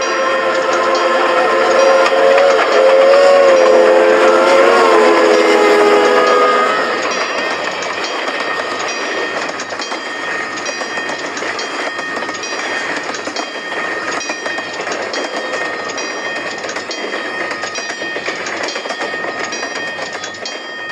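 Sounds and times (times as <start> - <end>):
high ringing squeal: 0.0 - 14.7
train wheels clattering over rails: 0.0 - 20.9.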